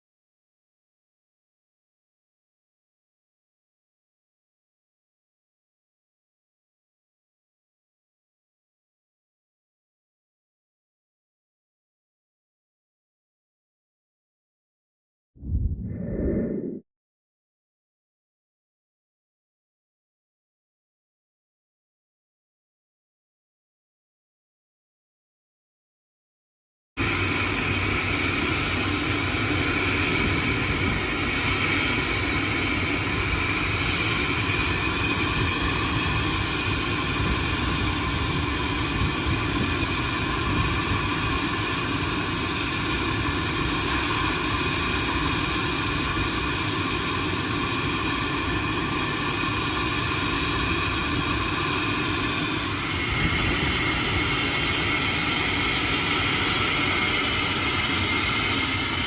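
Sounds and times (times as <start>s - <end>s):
jet engines whining: 15.4s - 16.8s, 48.7s - 59.0s.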